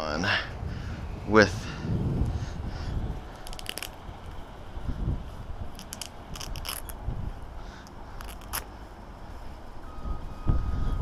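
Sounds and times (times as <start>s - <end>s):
wind rumble on microphone: 0.0s - 8.7s, 9.4s - 11.0s
archery gear clicks and scrapes: 3.4s - 4.0s, 5.7s - 7.0s, 7.8s - 8.7s.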